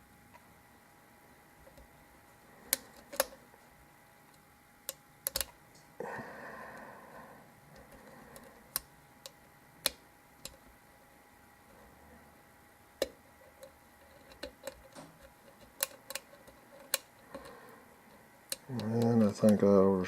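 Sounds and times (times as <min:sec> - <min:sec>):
lock pick scraping: 0:13.0 - 0:17.6.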